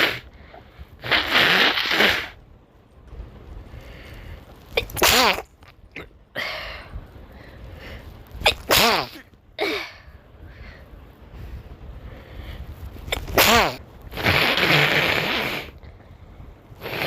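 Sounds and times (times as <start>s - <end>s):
breathing: 0.3s - 0.9s, 3.6s - 4.6s, 6.4s - 8.2s, 9.9s - 12.9s, 15.8s - 16.6s
person sneezing: 4.8s - 5.4s, 8.4s - 10.0s, 13.1s - 15.7s.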